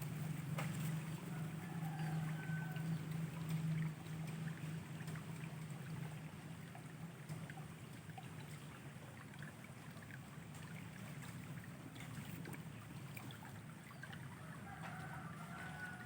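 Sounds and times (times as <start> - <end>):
low steady hum: 0.0 - 16.0
stream water flowing: 0.0 - 16.0.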